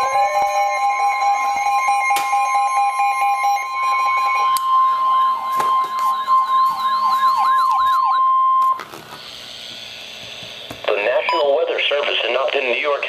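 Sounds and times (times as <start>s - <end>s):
high alert tone: 0.0s - 8.8s, 10.9s - 11.7s
siren wailing: 0.0s - 8.8s.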